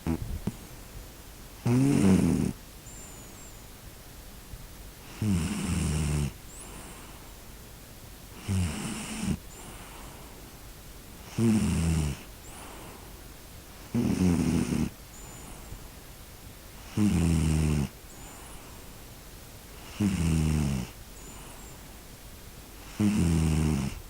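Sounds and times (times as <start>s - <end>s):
pet snoring: 0.0s - 0.2s, 1.6s - 2.6s, 5.0s - 7.0s, 8.4s - 10.1s, 11.2s - 13.0s, 13.8s - 15.6s, 16.8s - 18.6s, 19.8s - 21.6s, 22.8s - 24.0s.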